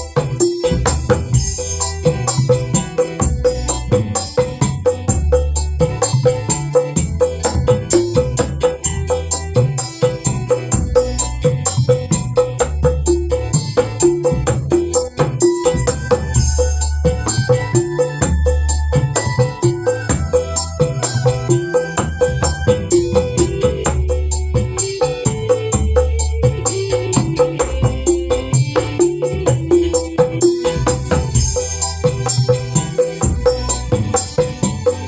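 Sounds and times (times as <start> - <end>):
hand drums playing: 0.0 - 35.0
instrumental backing with deep bass: 0.0 - 35.0
tambourine: 23.9 - 35.0.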